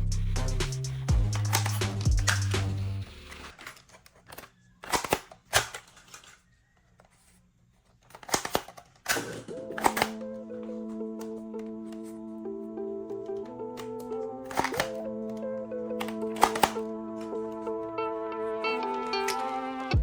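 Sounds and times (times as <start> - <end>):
background music: 0.0 - 3.5, 9.4 - 20.0
toy guns firing and clicking: 1.2 - 6.4, 8.1 - 10.3, 13.8 - 16.9.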